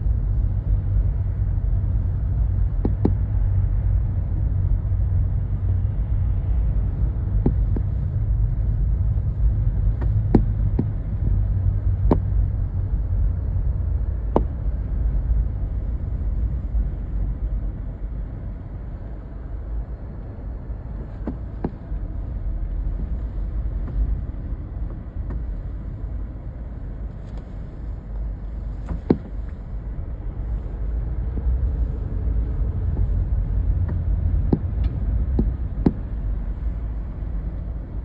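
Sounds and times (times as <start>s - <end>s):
low rumbling noise: 0.0s - 38.0s.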